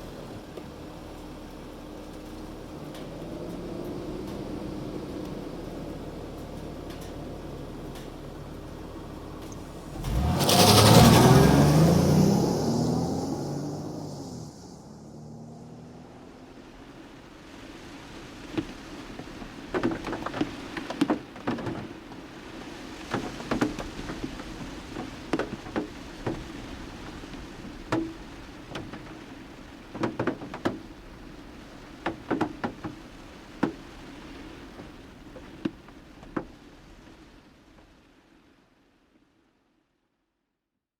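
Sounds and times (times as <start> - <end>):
sharp clicks and knocks: 18.6 - 22.2, 23.0 - 31.4, 32.0 - 34.0, 34.8 - 36.6.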